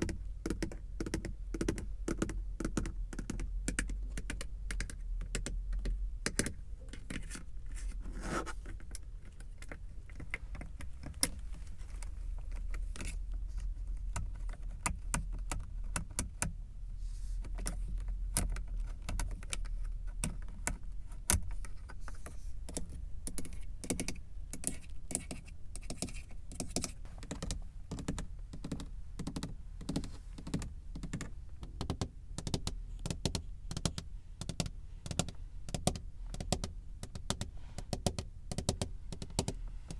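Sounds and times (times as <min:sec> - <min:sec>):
fingernails tapping on car surfaces: 0:00.0 - 0:07.1.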